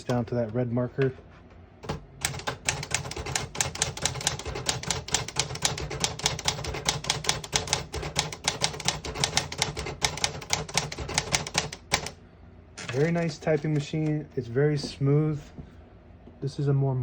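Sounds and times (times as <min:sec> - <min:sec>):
manual typewriter typing: 0:01.8 - 0:12.2, 0:12.8 - 0:14.2.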